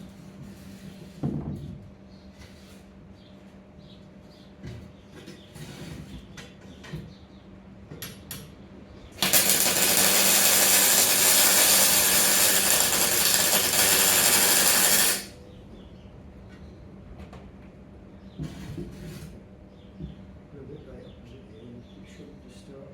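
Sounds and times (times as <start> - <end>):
welding arc crackling: 9.2 - 15.4.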